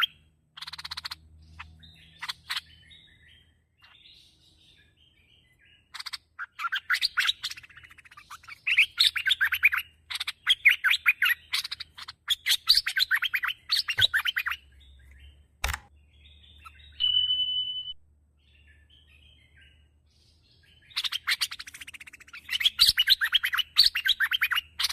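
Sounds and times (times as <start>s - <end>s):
bird chattering chirps: 0.0s - 24.9s
sharp click: 15.6s - 15.9s.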